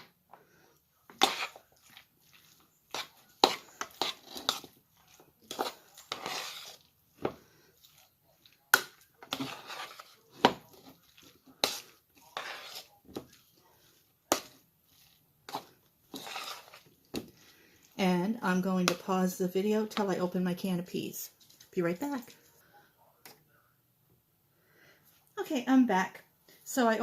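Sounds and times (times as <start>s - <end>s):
spoon clinking and scraping bowl: 1.1s - 13.4s, 14.3s - 17.3s.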